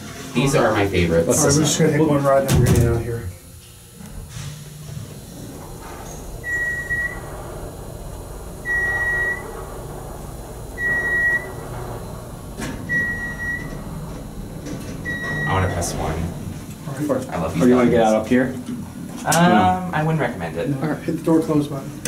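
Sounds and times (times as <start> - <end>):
hum of moving elevator car: 0.0 - 22.0
elevator beep: 5.1 - 16.7.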